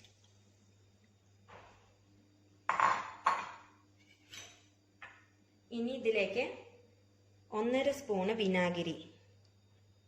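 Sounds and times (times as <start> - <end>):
dishes knocking and clinking: 2.7 - 5.2.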